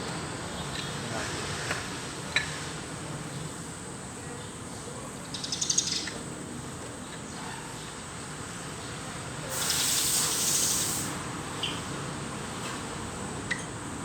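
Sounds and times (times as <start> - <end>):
gas hissing under pressure: 9.5 - 11.2.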